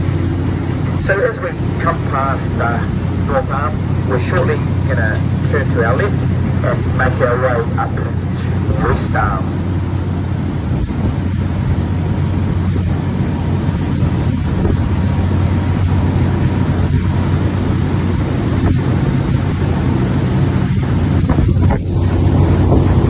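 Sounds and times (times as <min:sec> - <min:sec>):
rushing noise: 0:00.0 - 0:11.6
boat engine drone: 0:00.0 - 0:23.0.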